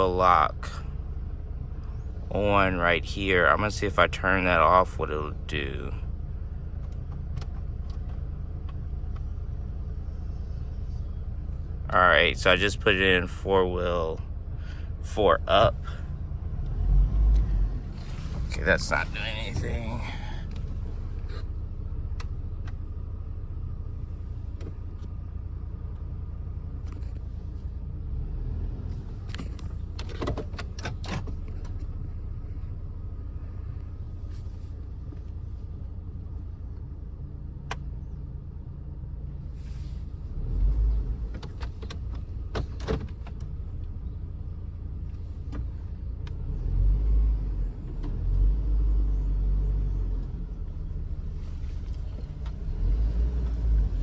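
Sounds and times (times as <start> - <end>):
vehicle engine running: 0.0 - 54.0
engine surging: 1.8 - 32.8.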